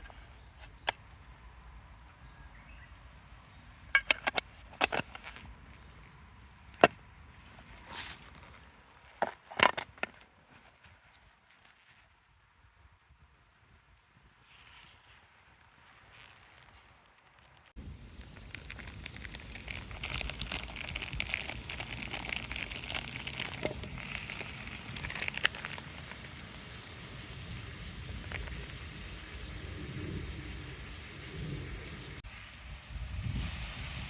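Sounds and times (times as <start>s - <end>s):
food crackling and sizzling over fire: 11.3s - 34.0s.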